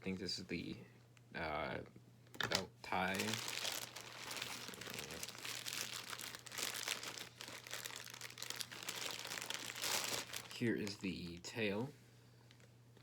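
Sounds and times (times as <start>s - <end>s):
plastic wrapping crinkling: 2.9s - 11.0s.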